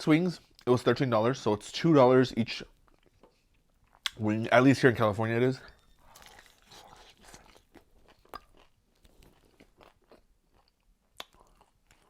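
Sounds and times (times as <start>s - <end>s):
chewing and crunching: 5.7s - 12.0s.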